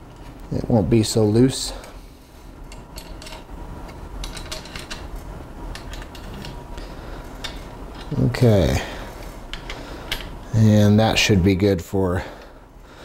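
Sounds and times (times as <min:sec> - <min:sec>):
metal clicks and rattles of bolts: 0:02.7 - 0:06.6.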